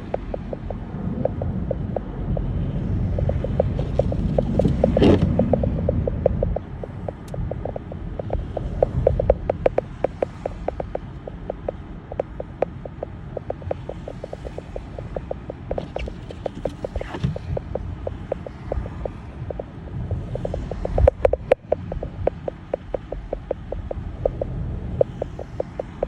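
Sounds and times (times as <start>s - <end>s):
car road rumble: 0.0s - 26.0s
light ticks: 0.0s - 26.0s.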